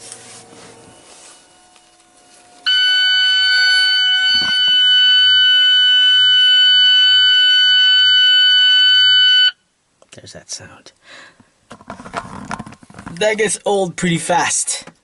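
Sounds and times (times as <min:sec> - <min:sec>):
high-pitched electronic warning tone: 0:00.1 - 0:09.6.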